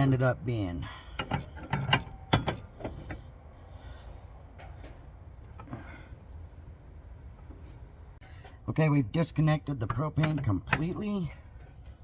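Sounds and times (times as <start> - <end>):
metal tools clanking on fitting: 0.9 - 3.2.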